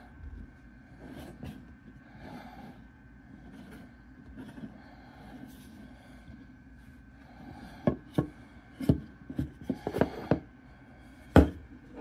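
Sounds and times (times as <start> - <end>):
hard objects knocking and clicking: 7.8 - 10.5.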